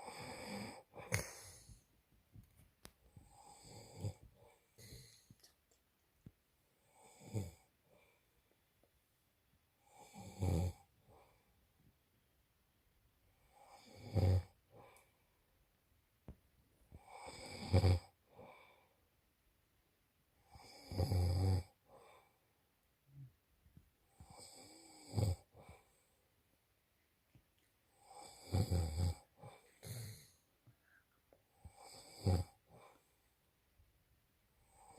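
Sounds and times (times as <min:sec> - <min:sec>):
man snoring loudly: 0:00.0 - 0:01.2, 0:03.2 - 0:04.2, 0:06.9 - 0:07.6, 0:09.8 - 0:10.9, 0:13.5 - 0:14.6, 0:17.0 - 0:18.2, 0:20.5 - 0:21.8, 0:24.2 - 0:25.6, 0:28.0 - 0:30.3, 0:31.6 - 0:32.7.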